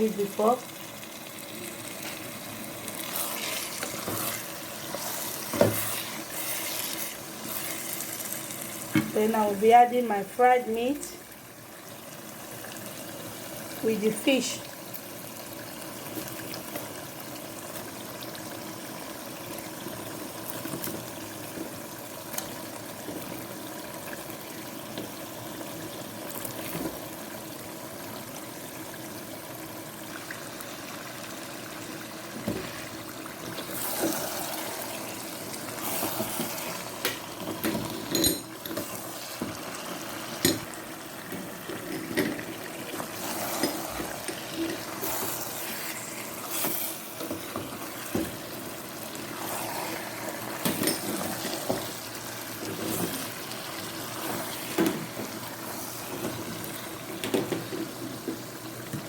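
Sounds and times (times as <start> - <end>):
sauce bubbling in a pot: 0.1 - 59.0
spoon scraping a pot: 43.2 - 47.6.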